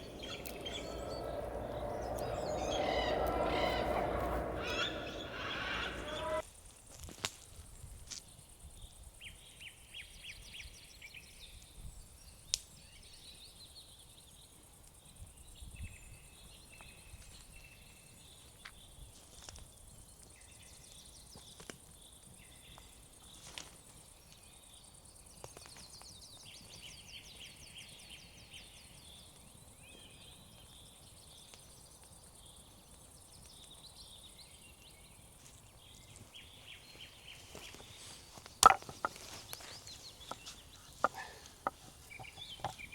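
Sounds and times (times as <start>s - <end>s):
night insects chirping: 0.0s - 6.4s.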